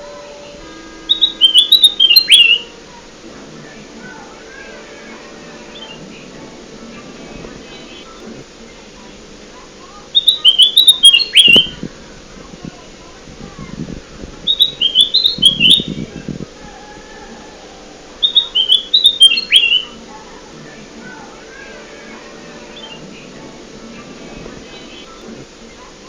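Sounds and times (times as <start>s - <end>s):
bird whistling song: 0.4s - 2.7s, 10.1s - 11.8s, 14.4s - 16.3s, 18.2s - 20.0s.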